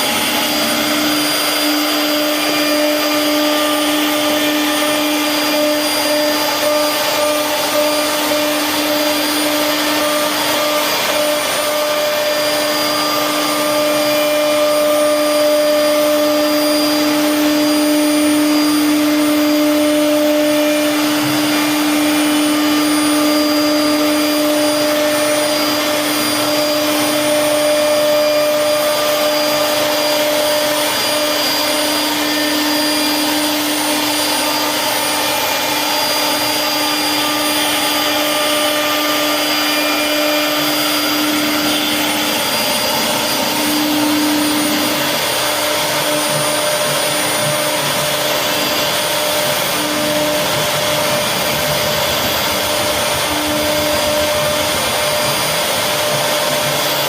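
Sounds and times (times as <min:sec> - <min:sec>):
wood router spindle whine: 0:00.0 - 0:57.0
continuous rushing noise: 0:24.2 - 0:57.0.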